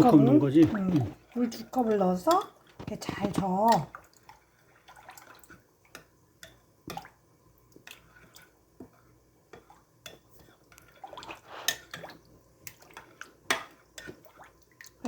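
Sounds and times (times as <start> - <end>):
liquid sloshing: 0.0 - 5.7.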